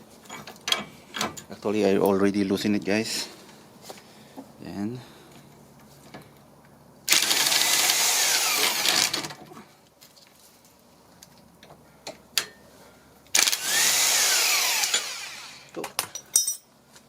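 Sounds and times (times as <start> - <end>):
power tool spinning nut off: 7.1 - 9.4, 13.3 - 15.7.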